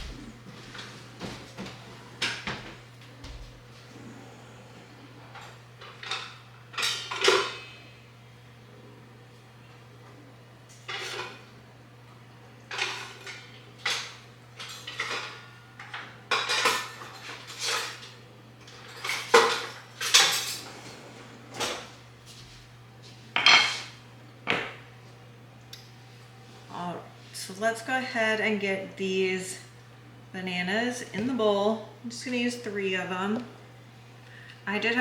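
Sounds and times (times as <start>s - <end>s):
dishes and utensils clattering: 12.7s - 18.1s, 18.7s - 21.9s.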